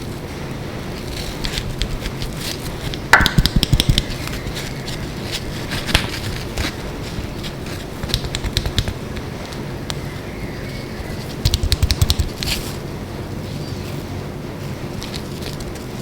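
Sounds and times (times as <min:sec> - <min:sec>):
steady background noise: 0:00.0 - 0:16.0
mechanical keyboard clicking: 0:08.1 - 0:09.0.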